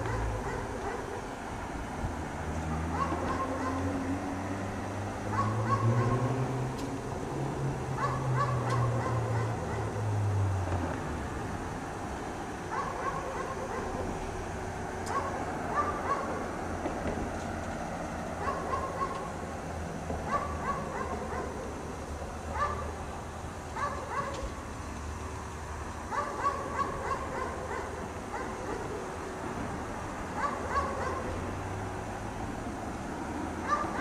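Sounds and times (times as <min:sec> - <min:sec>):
dog barking: 0:00.0 - 0:01.2, 0:02.7 - 0:04.0, 0:05.2 - 0:06.4, 0:08.0 - 0:10.1, 0:12.7 - 0:14.2, 0:15.0 - 0:16.4, 0:18.4 - 0:19.3, 0:20.2 - 0:21.7, 0:22.5 - 0:23.0, 0:23.8 - 0:24.5, 0:26.1 - 0:29.1, 0:30.4 - 0:31.4, 0:33.6 - 0:34.0.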